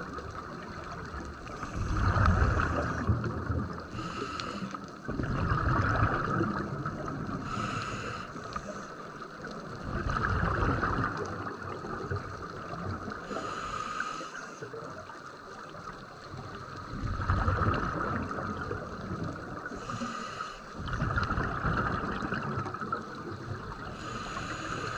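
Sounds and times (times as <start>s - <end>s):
bubbling exhale underwater: 0.0s - 4.0s, 5.0s - 8.2s, 9.8s - 13.3s, 16.9s - 20.0s, 20.8s - 24.9s
regulator hissing inhale: 1.6s - 3.1s, 3.8s - 5.0s, 7.4s - 9.0s, 13.2s - 14.7s, 19.7s - 20.8s, 23.9s - 24.9s.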